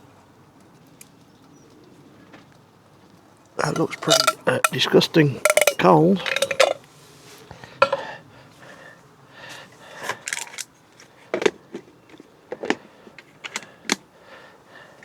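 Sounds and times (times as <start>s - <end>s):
cookware clicks and knocks: 3.6s - 6.8s.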